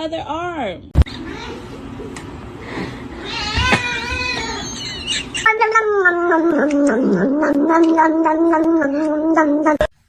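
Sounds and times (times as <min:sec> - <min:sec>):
cat meowing: 0:05.4 - 0:09.9.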